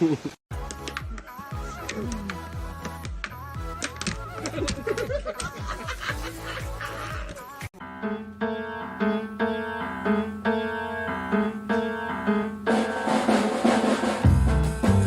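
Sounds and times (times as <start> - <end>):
drums and cymbal hiss: 12.6 - 15.0.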